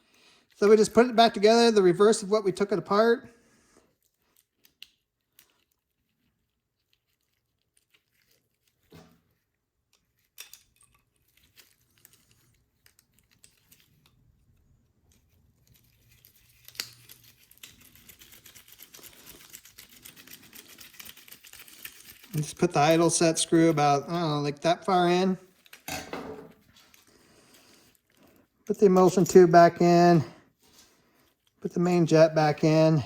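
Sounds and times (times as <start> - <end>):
small metal parts clicking: 9.9 - 14.2.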